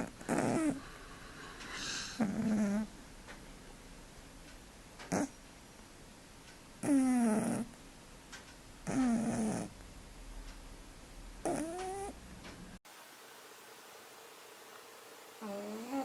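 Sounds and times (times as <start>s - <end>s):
cat snoring: 0.0s - 0.9s, 1.8s - 2.9s, 6.8s - 7.7s, 8.8s - 9.7s, 11.4s - 12.2s, 15.4s - 16.0s.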